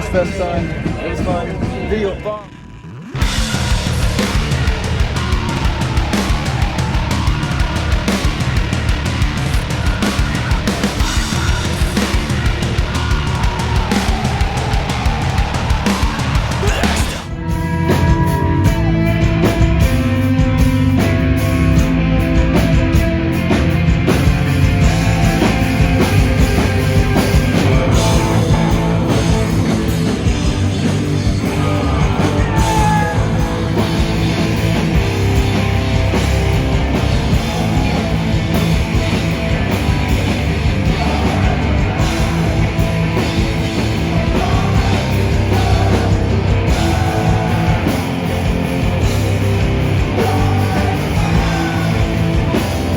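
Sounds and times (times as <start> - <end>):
distorted guitars: 0.0 - 52.9
drum kit: 0.0 - 52.9
person singing: 31.3 - 34.7, 40.7 - 49.0, 49.9 - 52.9.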